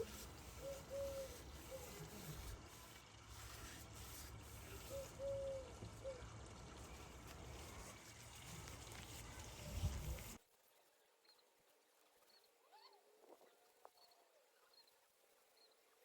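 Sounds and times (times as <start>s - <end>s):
bird calling faintly: 0.0s - 3.0s.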